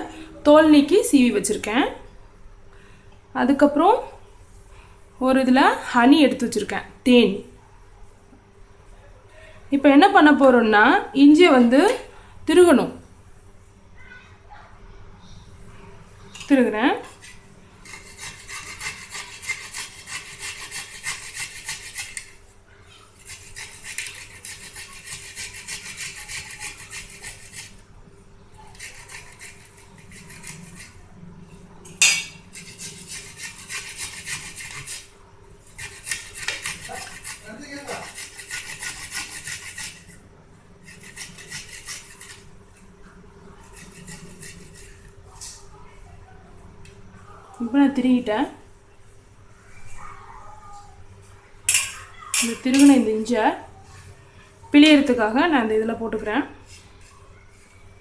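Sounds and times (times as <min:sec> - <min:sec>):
ginger scraping on grater: 0:17.8 - 0:22.3, 0:23.2 - 0:27.8, 0:28.7 - 0:31.0, 0:32.5 - 0:40.2, 0:40.8 - 0:42.5, 0:43.6 - 0:45.1.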